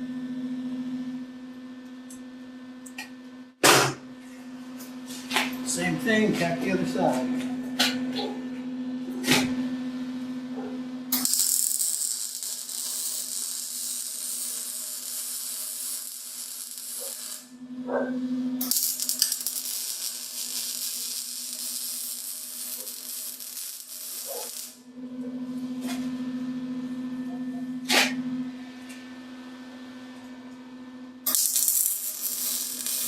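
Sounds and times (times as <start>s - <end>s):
welding arc crackling: 11.1s - 17.6s, 18.6s - 24.9s, 31.3s - 33.0s.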